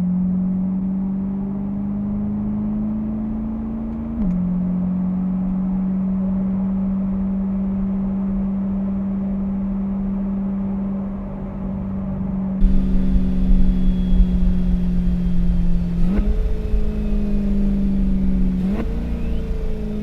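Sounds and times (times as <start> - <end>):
car engine droning: 11.2 - 20.0.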